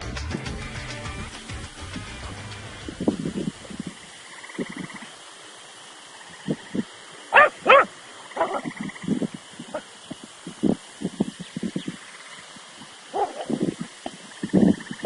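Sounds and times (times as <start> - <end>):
dog barking: 7.3 - 8.7, 13.1 - 13.6.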